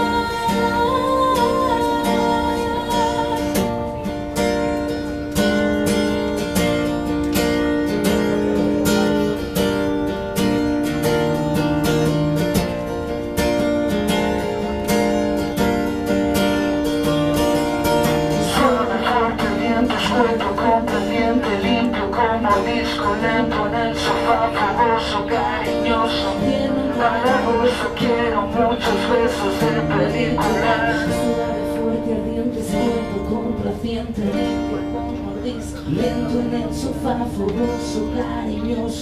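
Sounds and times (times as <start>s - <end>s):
person singing: 0.0s - 3.7s, 18.3s - 39.0s
acoustic guitar strumming: 0.0s - 39.0s.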